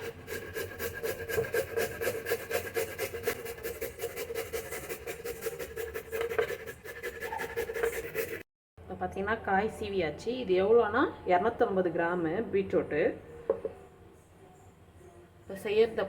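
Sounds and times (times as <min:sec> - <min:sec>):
grater rasping: 0:00.0 - 0:08.5.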